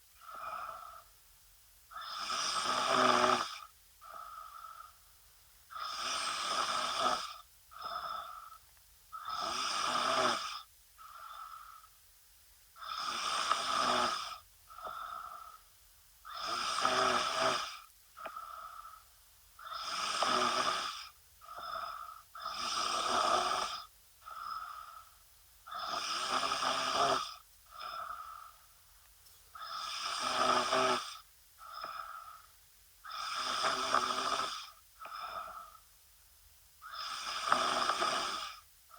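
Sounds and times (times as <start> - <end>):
faint breath sound: 0.0 - 1.2, 3.6 - 9.6, 10.6 - 12.0, 13.0 - 15.8, 16.5 - 20.4, 21.0 - 23.2, 23.8 - 26.8, 27.4 - 36.0
woman snoring: 1.9 - 5.0, 5.7 - 8.6, 9.2 - 11.8, 12.8 - 15.6, 16.3 - 19.0, 19.6 - 25.1, 25.7 - 28.6, 29.6 - 35.8, 36.8 - 38.6.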